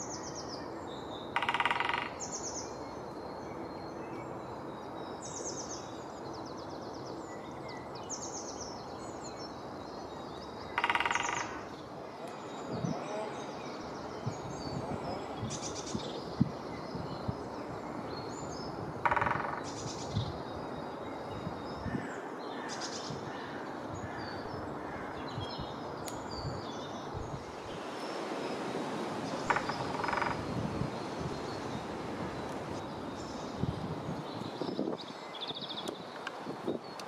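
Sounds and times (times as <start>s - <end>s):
steady outdoor hiss: 0.0s - 37.0s
woodpecker drumming on wood: 1.4s - 2.2s, 10.8s - 11.7s, 19.0s - 19.7s, 29.4s - 30.5s
faint bird calls: 28.4s - 33.6s.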